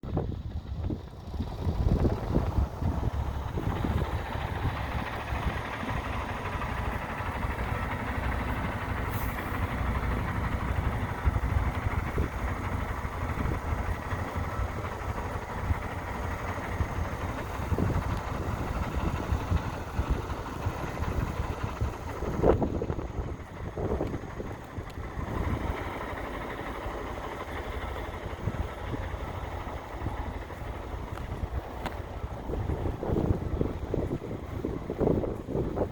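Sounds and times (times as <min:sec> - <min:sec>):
diesel engine idling: 0:00.0 - 0:35.9
wind buffeting microphone: 0:00.0 - 0:35.9.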